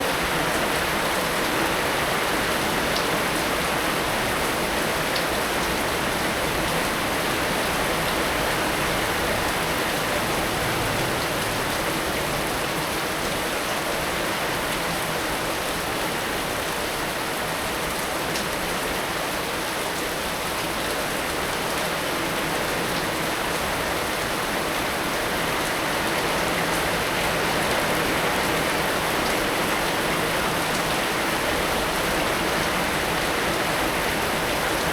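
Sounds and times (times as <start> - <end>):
heavy rain falling: 0.0 - 34.9.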